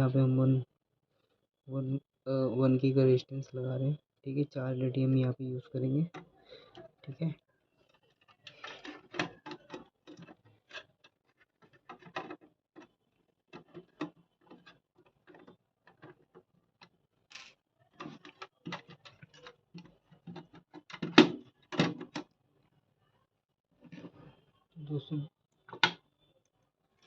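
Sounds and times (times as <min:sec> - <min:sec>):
small parts and tools clicking: 0:07.8 - 0:22.4.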